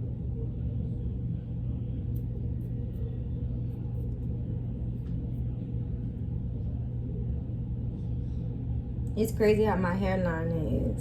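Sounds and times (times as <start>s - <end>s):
steady low hum: 0.0s - 11.0s.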